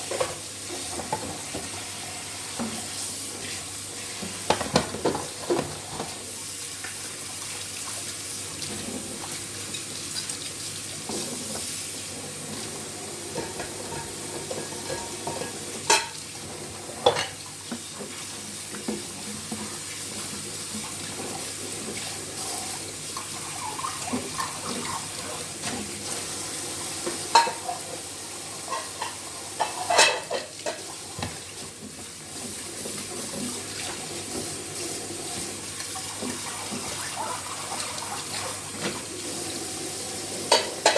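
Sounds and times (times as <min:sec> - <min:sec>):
tap water running into sink: 0:00.0 - 0:40.9
dishes clinking: 0:13.4 - 0:16.2, 0:27.3 - 0:27.9, 0:28.7 - 0:30.8, 0:40.5 - 0:40.9.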